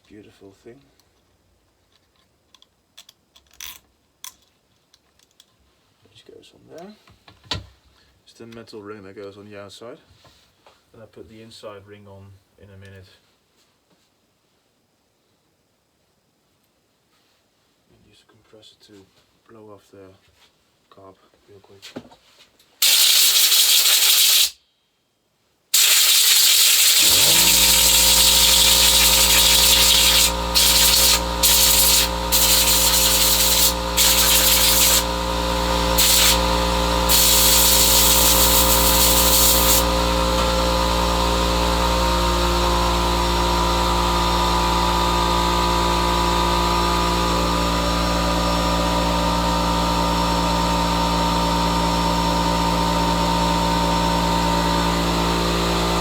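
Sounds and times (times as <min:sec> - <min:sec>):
air compressor motor humming: 0:22.8 - 0:24.5, 0:25.8 - 0:56.0
compressed air hissing from blow gun: 0:22.8 - 0:24.6, 0:25.8 - 0:35.3, 0:36.0 - 0:40.0.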